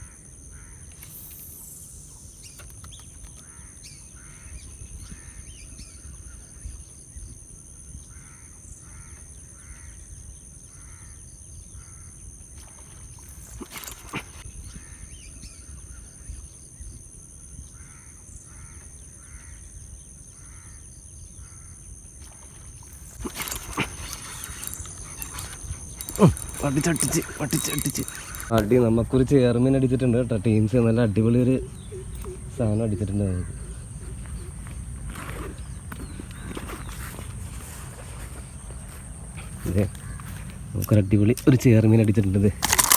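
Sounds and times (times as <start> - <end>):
steady high-pitched whine: 0.9 - 3.2
sharp clicks: 0.9 - 3.9, 22.8 - 28.8, 39.9 - 42.9
crows cawing: 8.1 - 11.2, 21.4 - 40.8.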